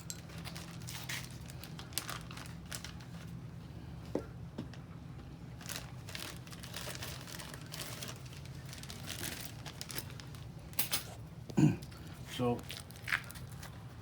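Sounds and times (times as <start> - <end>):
plastic bag crinkling: 0.0 - 3.4, 5.6 - 10.7, 12.3 - 13.8
steady low hum: 0.0 - 14.0.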